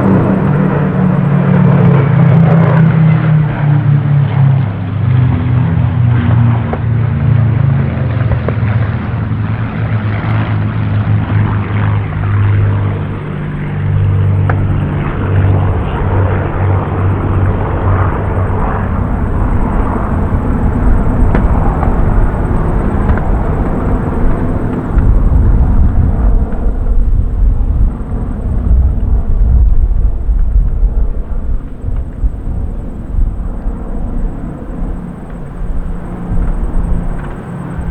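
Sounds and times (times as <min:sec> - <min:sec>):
aircraft piston engines droning: 0:00.0 - 0:37.9.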